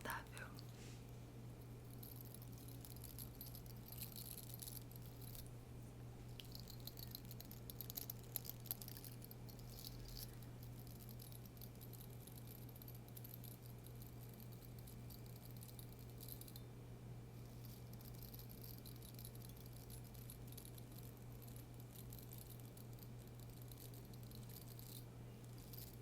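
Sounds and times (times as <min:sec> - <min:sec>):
steady low hum: 0:00.0 - 0:26.0
light rapid scratching: 0:06.3 - 0:16.6.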